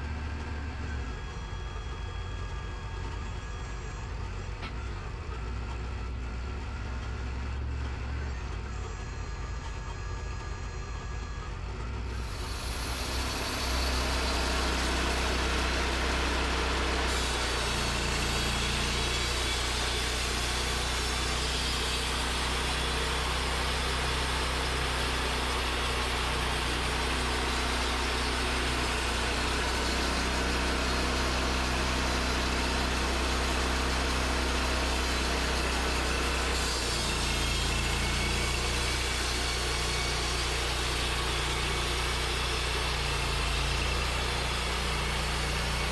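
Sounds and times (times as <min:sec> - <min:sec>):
sawmill engine running: 0:00.0 - 0:45.9.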